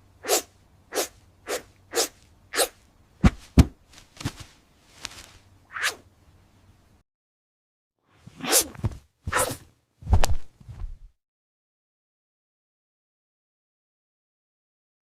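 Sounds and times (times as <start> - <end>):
cat sneezing: 0.2 - 2.8.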